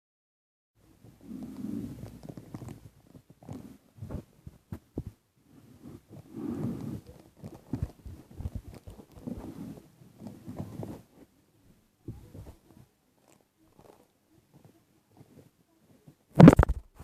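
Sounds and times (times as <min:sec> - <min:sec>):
sharp clicks and crinkles: 0:02.0 - 0:05.2, 0:06.8 - 0:09.6, 0:13.2 - 0:15.5, 0:16.3 - 0:17.0
packets rubbing and rustling: 0:06.9 - 0:11.1.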